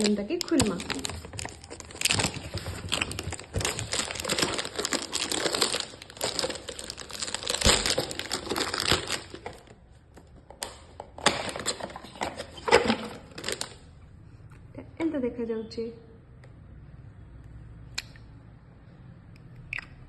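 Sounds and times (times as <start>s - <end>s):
packaging crinkling: 0.0s - 13.9s.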